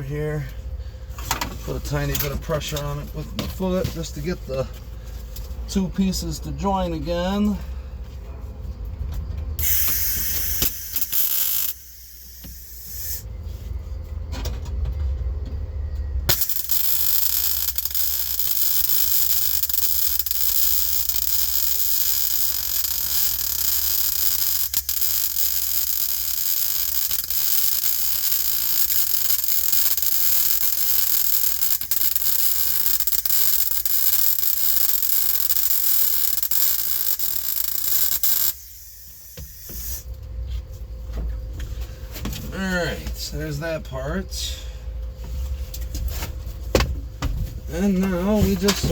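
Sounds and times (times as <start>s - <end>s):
welding arc on steel: 9.6s - 13.3s, 16.3s - 40.1s.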